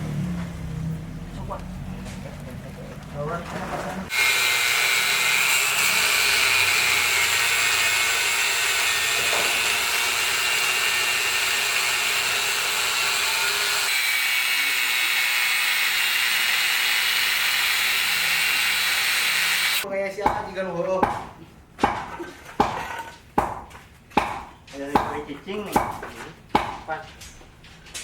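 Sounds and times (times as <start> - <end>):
power tool whining: 4.1 - 19.8.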